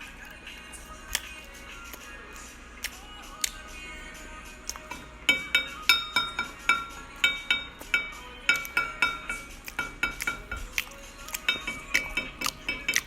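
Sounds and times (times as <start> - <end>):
metal bowl clinking: 4.8 - 13.0.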